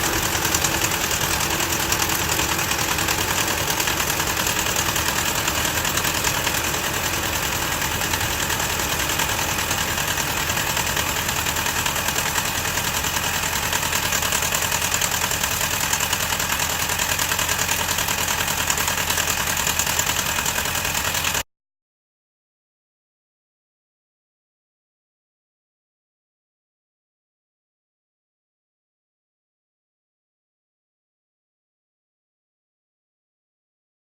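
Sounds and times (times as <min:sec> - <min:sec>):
engine ticking clatter: 0:00.0 - 0:21.4.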